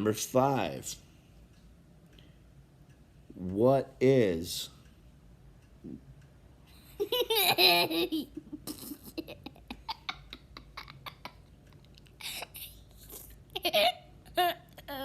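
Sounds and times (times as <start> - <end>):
child laughing: 6.9 - 15.0.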